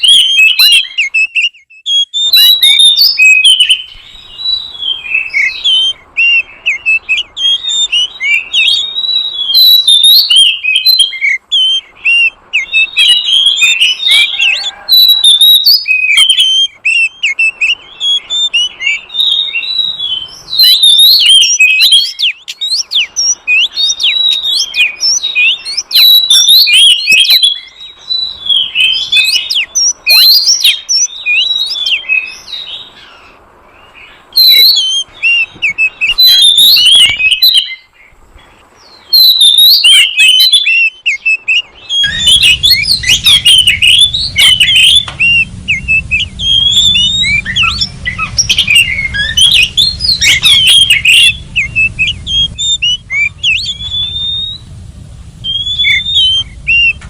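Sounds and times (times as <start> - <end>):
bird singing whistles and chirps: 0.0 - 57.0
steady low hum: 41.6 - 57.0.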